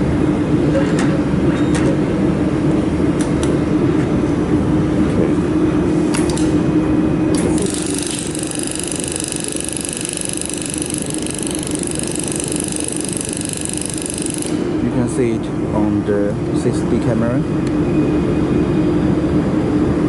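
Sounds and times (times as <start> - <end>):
welding machine hum: 5.5 - 15.4
high buzzing tone: 7.0 - 15.0.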